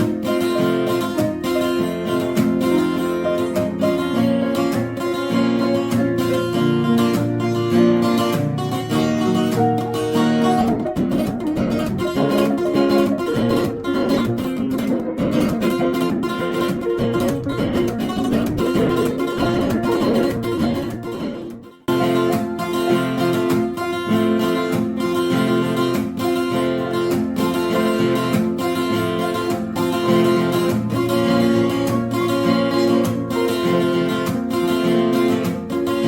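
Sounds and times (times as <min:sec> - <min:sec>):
acoustic guitar strummed: 0:00.0 - 0:36.0.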